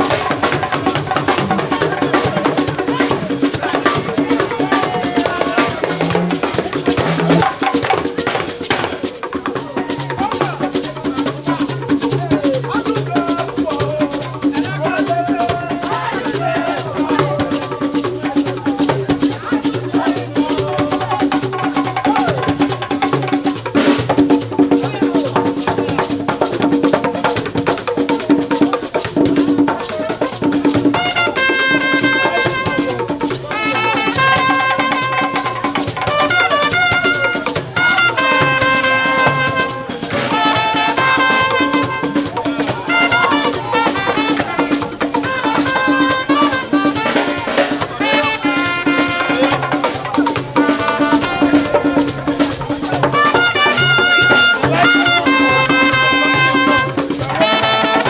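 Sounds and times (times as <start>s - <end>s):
conga and hand percussion: 0.0s - 58.0s
salsa band music: 0.0s - 58.0s
horn-like melody: 30.9s - 50.0s, 50.6s - 58.0s.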